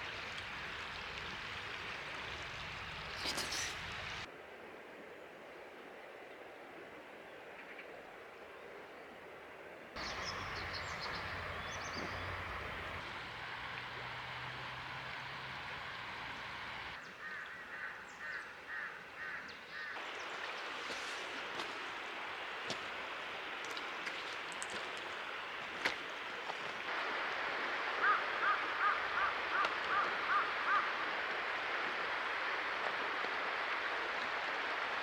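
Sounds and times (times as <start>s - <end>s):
rushing water: 0.0s - 4.3s, 10.0s - 17.0s, 19.7s - 35.0s
bird repeated short calls: 3.1s - 4.2s
birds chirping: 10.0s - 17.4s.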